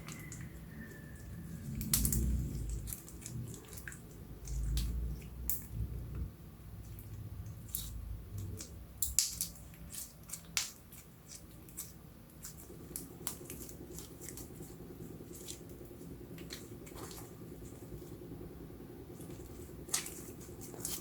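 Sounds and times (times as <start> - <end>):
slime kneaded by hand: 0.0 - 21.0.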